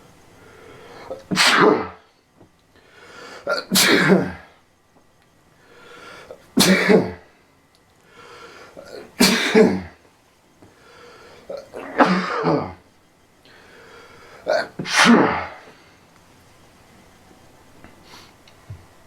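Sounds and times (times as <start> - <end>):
person sneezing loudly: 1.0 - 2.1, 3.4 - 4.5, 6.6 - 7.3, 8.8 - 10.0, 11.5 - 12.8, 14.5 - 15.8.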